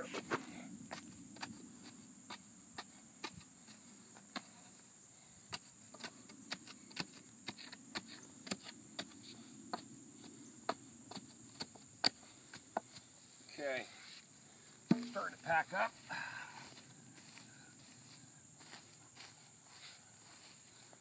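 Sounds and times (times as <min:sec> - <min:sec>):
wood knocks tamping dirt: 0:00.0 - 0:04.6, 0:05.5 - 0:13.1, 0:14.8 - 0:15.6
high insect drone: 0:00.0 - 0:21.0.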